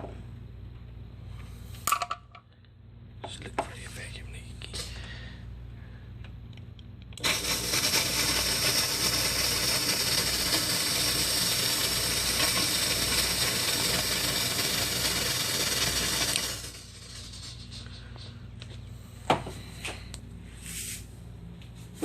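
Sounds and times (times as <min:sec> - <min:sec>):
steady low hum: 0:00.0 - 0:22.0
smoke machine hissing: 0:07.2 - 0:19.2.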